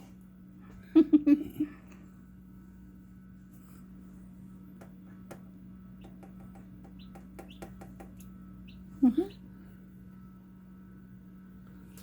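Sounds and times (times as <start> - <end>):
steady low hum: 0.0 - 12.0
chick peeping: 6.0 - 9.4.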